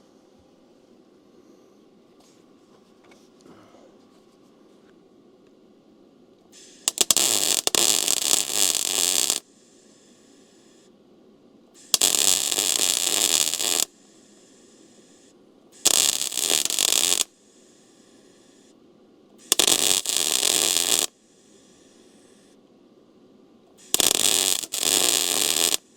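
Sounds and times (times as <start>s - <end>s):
faint hiss: 5.9s - 25.9s
welding arc crackling: 6.6s - 9.5s, 11.8s - 14.0s, 15.8s - 17.3s, 19.4s - 21.2s, 23.8s - 25.9s.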